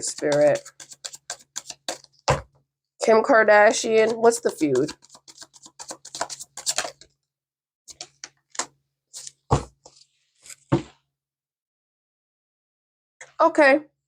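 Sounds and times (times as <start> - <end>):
cards being shuffled: 0.0 - 2.1, 4.0 - 7.0, 7.9 - 10.6.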